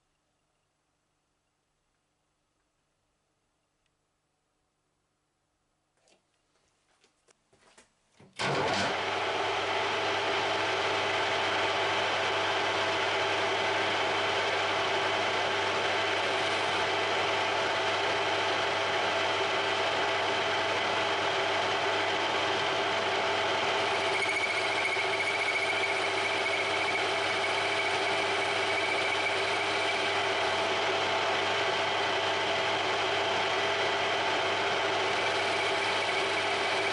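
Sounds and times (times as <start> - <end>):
lathe motor and gear whine: 8.4 - 36.9.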